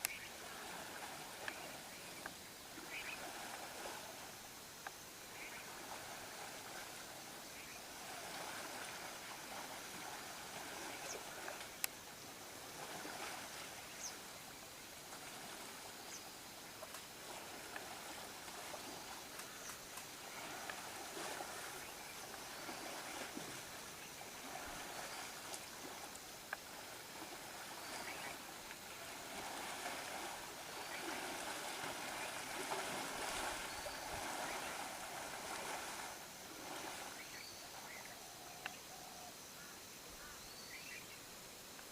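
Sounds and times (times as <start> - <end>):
river water running: 0.0 - 41.9.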